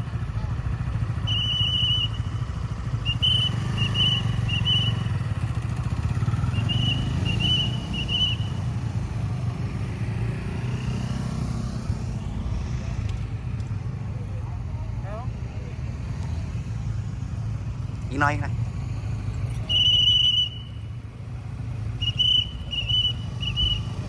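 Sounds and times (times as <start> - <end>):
police whistle blasts: 1.1 - 5.3, 6.4 - 8.7, 19.3 - 21.0, 21.8 - 24.0.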